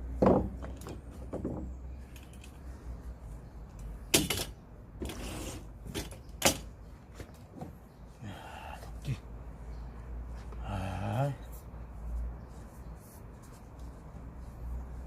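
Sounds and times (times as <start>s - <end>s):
wooden knocks of firewood: 0.1s - 1.9s.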